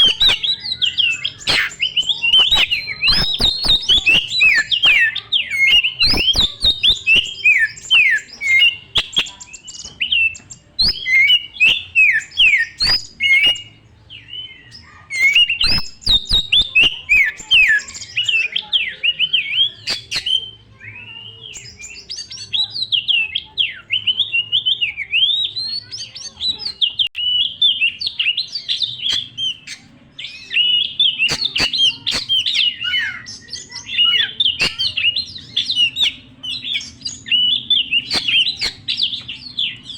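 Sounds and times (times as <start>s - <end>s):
sharp bird clicks: 0.0s - 13.7s, 15.2s - 18.4s, 19.8s - 20.5s, 29.0s - 39.8s
bird singing whistled phrases: 0.0s - 39.9s.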